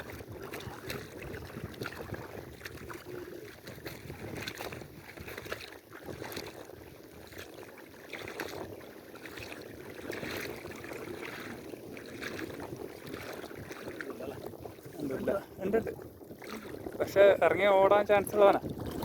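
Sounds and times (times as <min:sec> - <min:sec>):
small splashes and clicks: 0:00.0 - 0:15.1
water splashing and trickling: 0:00.0 - 0:19.0.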